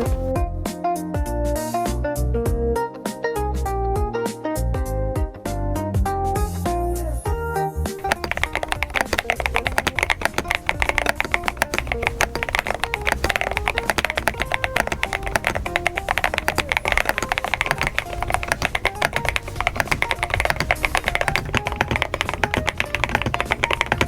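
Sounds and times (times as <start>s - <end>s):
faint stepping melody: 0.0s - 0.4s, 8.0s - 24.0s
mechanical keyboard typing: 8.0s - 24.0s.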